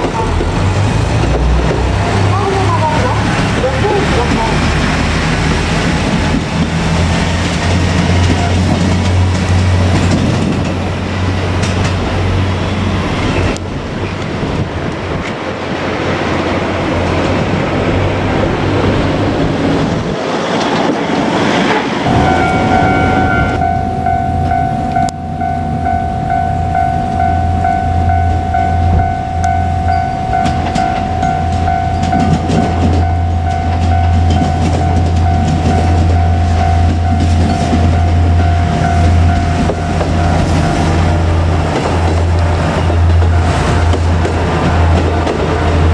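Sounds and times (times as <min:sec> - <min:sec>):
diesel railcar engine hum: 0:00.0 - 0:45.9
wheels clattering on rails: 0:00.0 - 0:45.9
level crossing warning bell: 0:22.0 - 0:45.9.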